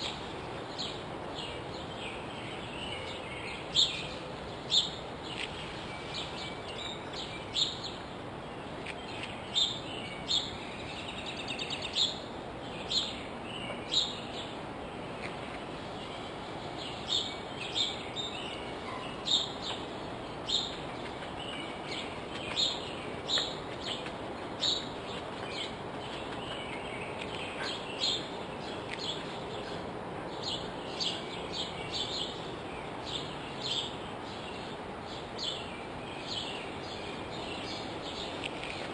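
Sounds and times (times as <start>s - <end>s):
songbirds chirping: 0.0s - 38.9s
steady background hiss: 0.0s - 38.9s.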